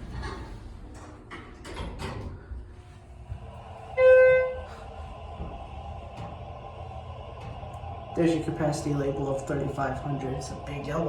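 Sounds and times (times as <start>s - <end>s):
elevator car humming: 0.0s - 11.0s
elevator chime beep: 4.0s - 4.7s.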